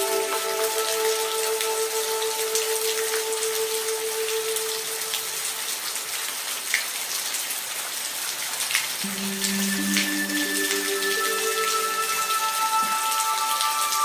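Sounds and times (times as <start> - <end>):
soft music of held notes: 0.0 - 5.8, 9.0 - 14.0
steady rain: 0.0 - 14.0.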